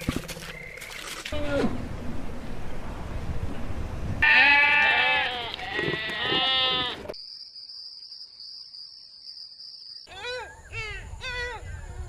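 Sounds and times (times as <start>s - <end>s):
goat bleating: 4.2s - 7.2s.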